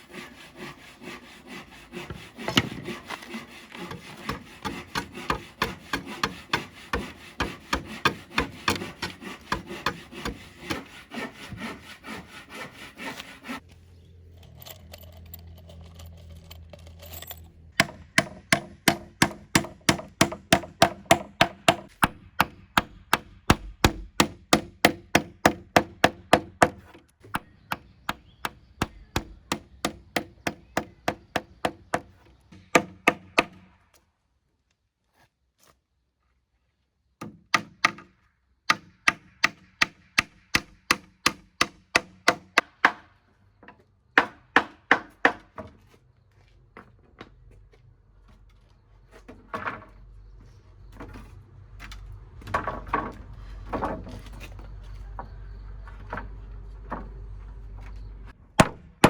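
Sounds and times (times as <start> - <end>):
hand saw cutting wood: 0.0 - 13.6, 17.8 - 33.7, 38.7 - 43.0.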